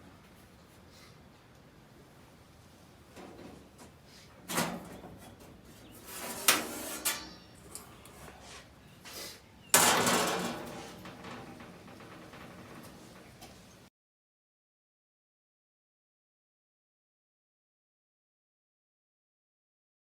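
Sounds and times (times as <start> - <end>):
steel clanking: 9.7 - 13.4.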